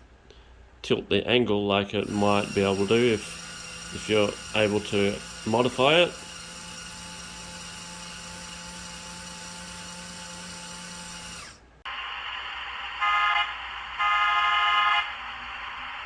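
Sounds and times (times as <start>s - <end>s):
small electric motors humming: 2.0s - 11.8s
horn blasts: 13.0s - 15.2s.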